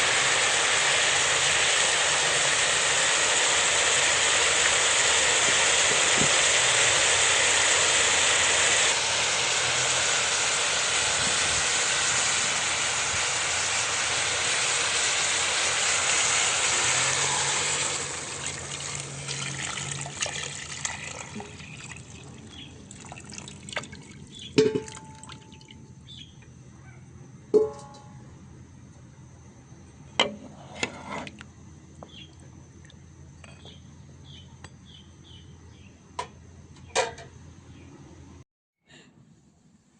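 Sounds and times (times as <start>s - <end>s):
soup pot hissing: 0.0s - 25.0s.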